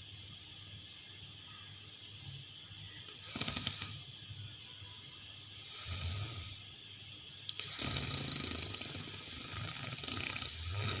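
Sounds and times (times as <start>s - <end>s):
creature growls with breathy hiss: 7.6s - 11.0s.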